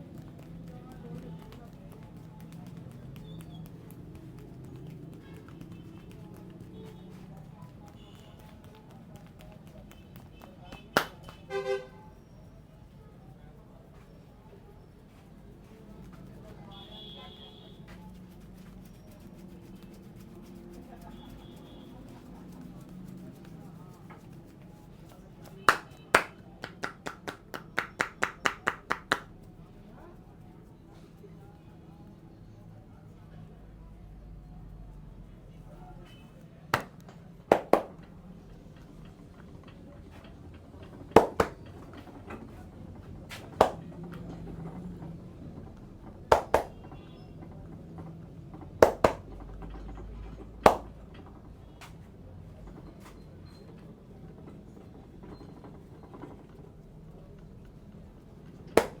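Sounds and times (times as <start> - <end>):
hands clapping sharply: 0.0 - 11.7, 18.6 - 29.4, 36.7 - 38.1, 41.2 - 41.7, 43.3 - 43.9, 46.3 - 46.9, 48.8 - 49.4, 50.6 - 51.0, 58.8 - 59.0.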